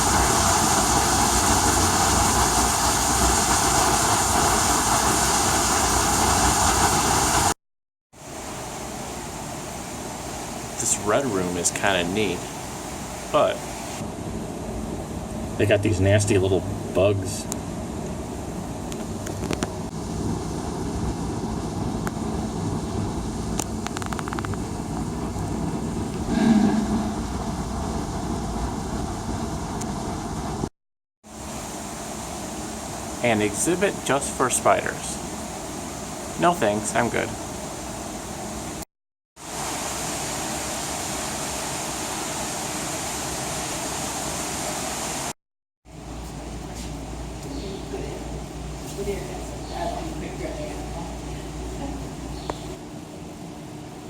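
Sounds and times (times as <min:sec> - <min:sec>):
ventilation system rumble: 0:00.0 - 0:07.5, 0:08.2 - 0:30.7, 0:31.4 - 0:38.8, 0:45.9 - 0:54.0
running water rushing: 0:00.0 - 0:07.6, 0:08.2 - 0:14.0, 0:31.3 - 0:38.8, 0:39.4 - 0:45.4.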